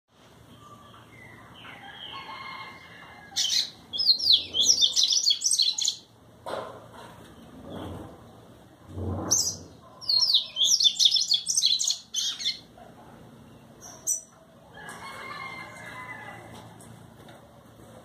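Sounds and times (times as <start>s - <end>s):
bird chirping: 0.5s - 6.1s, 9.3s - 12.7s, 13.4s - 14.4s.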